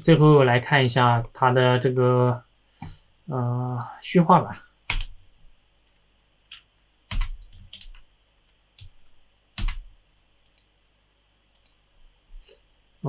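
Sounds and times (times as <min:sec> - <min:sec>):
computer keyboard taps: 0:04.9 - 0:05.1, 0:09.6 - 0:09.8
mouse clicks: 0:11.5 - 0:11.8.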